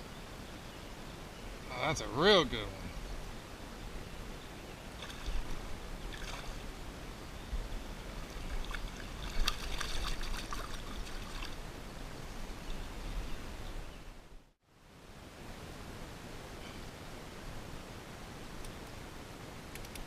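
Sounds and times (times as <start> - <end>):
creek water running: 1.1 - 13.7
water splashing and trickling: 4.9 - 6.8, 7.9 - 12.7.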